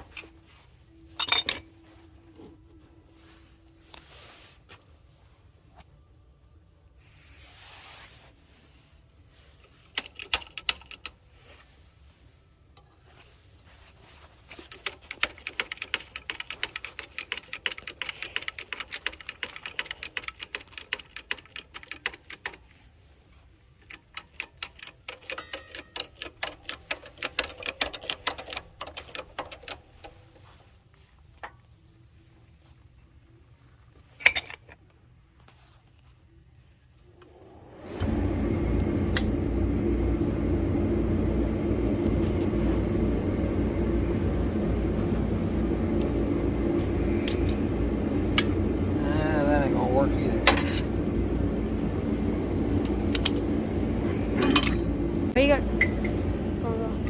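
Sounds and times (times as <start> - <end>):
rapid metallic clicking: 14.7 - 22.6.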